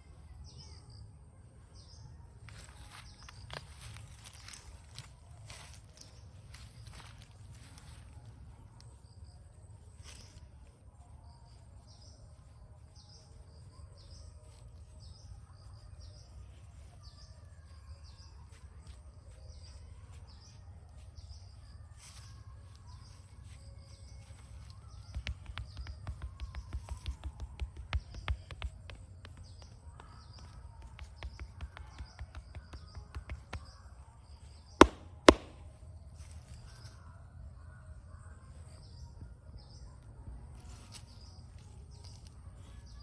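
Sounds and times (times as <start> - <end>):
birds chirping: 22.8 - 35.7
hands tapping on head: 25.0 - 33.8, 34.8 - 35.7.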